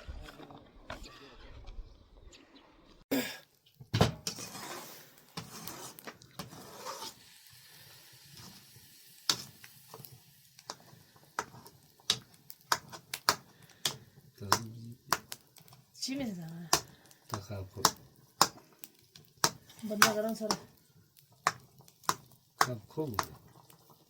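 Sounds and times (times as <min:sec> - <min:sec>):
scraping or rustling: 0:04.2 - 0:07.2
objects knocking and clicking: 0:10.6 - 0:15.8, 0:16.7 - 0:20.8, 0:21.4 - 0:24.0.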